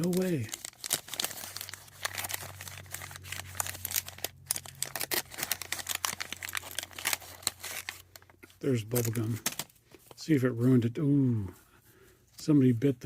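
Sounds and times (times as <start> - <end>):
paper wrapper crinkling and tearing: 0.0 - 10.2.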